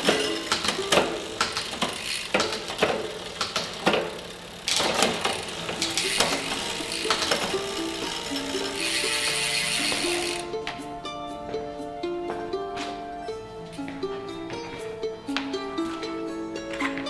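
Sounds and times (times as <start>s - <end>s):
music with percussive beat: 5.8s - 13.0s.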